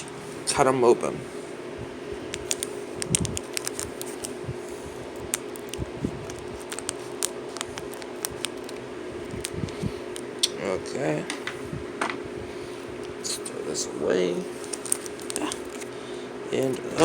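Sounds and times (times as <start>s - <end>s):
steady low hum: 0.0s - 17.0s
scissors snipping wrapper: 2.3s - 4.4s, 5.3s - 8.8s, 14.6s - 15.9s.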